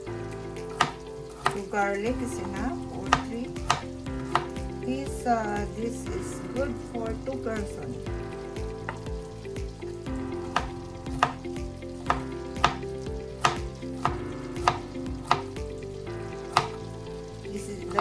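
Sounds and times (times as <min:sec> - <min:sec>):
background music: 0:00.0 - 0:18.0
knife chopping on cutting board: 0:00.7 - 0:01.7, 0:02.4 - 0:04.6, 0:10.5 - 0:11.4, 0:12.1 - 0:12.8, 0:13.4 - 0:15.5, 0:16.4 - 0:16.9.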